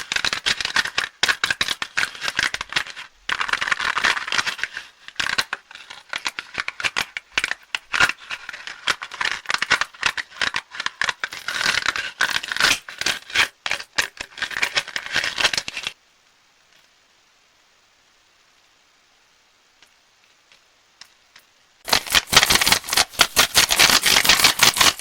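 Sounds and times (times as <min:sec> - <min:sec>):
plastic wrappers crinkling: 0:21.8 - 0:25.0.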